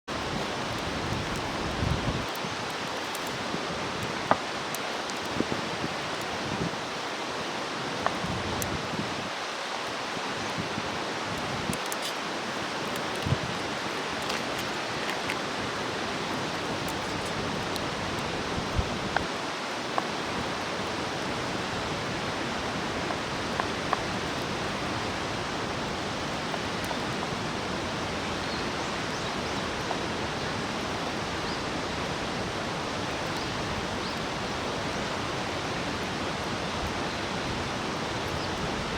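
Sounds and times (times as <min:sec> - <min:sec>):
fire hissing: 0:00.1 - 0:28.9
campfire crackling and popping: 0:00.1 - 0:31.3.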